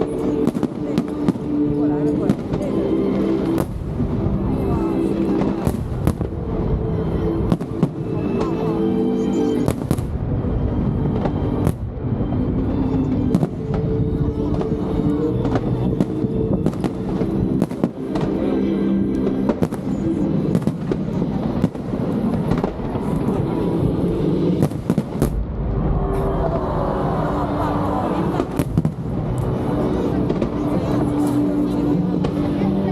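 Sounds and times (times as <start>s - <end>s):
fireworks bangs and crackle: 0.0s - 18.5s, 19.2s - 32.9s
music with held tones: 0.0s - 25.2s.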